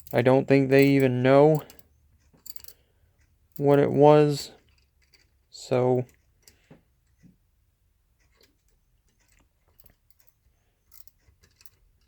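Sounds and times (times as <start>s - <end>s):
ratcheting wrench clicking: 2.4s - 2.8s.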